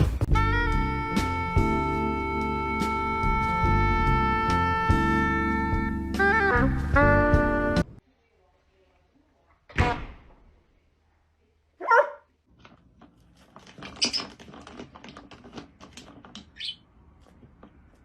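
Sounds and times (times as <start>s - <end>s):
small clicks and scrapes: 12.5s - 18.0s.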